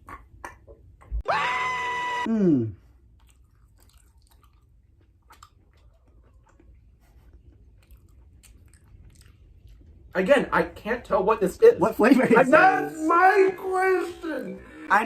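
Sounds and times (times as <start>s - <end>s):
chewing gummy candy: 2.8s - 10.2s.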